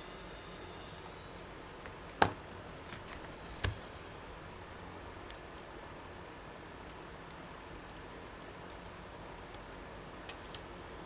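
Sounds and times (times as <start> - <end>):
faint clicks of small parts handled: 6.3 - 10.7.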